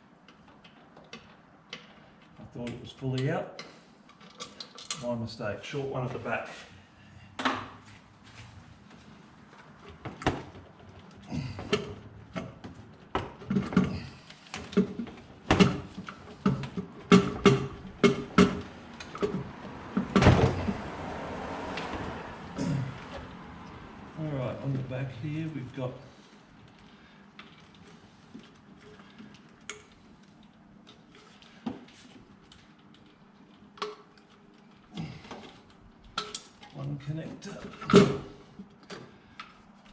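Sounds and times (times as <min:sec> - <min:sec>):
hand tools clunking on metal: 0:11.4 - 0:20.9, 0:37.4 - 0:39.1.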